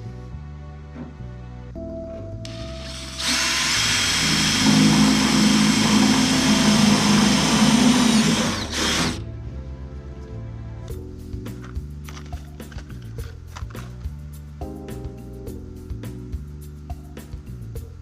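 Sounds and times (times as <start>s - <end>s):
power drill motor whine: 2.5s - 9.2s.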